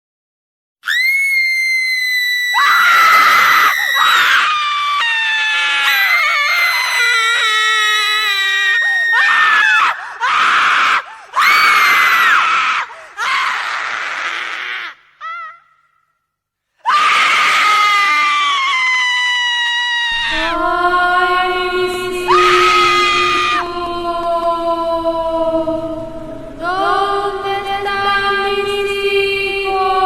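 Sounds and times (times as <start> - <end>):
woman screaming: 0.8 - 15.7, 16.8 - 20.3, 22.3 - 23.6.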